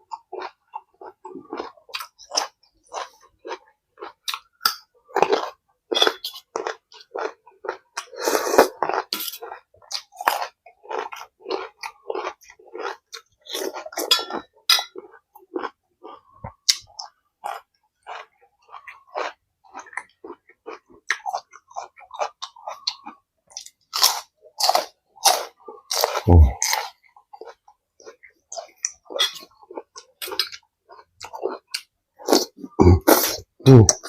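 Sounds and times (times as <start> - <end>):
person chewing with wet smacks: 0.0 - 34.0.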